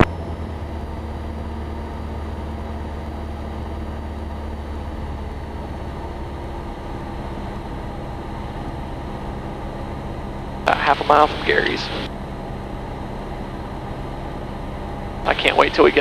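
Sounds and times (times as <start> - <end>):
propeller plane engine droning: 0.0 - 16.0.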